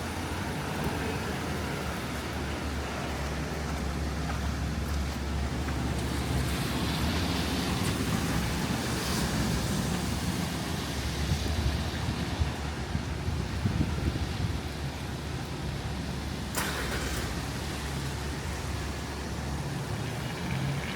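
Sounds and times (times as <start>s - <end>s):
low traffic rumble: 0.0s - 20.9s
rain on wet roads: 0.0s - 20.9s.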